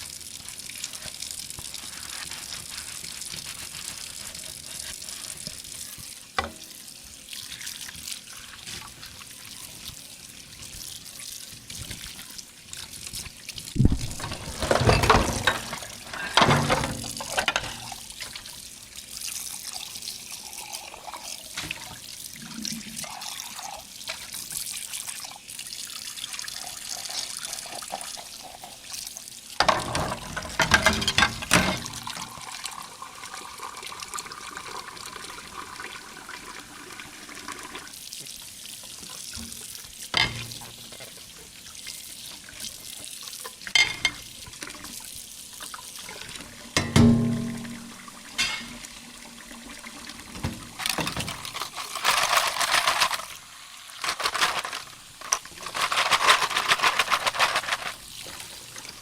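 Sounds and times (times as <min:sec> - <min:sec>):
tap water running into sink: 0:10.6 - 0:24.6, 0:29.6 - 0:51.8
dishes clattering: 0:14.1 - 0:18.0, 0:29.6 - 0:32.0, 0:40.2 - 0:40.6, 0:43.8 - 0:44.2, 0:46.8 - 0:48.9.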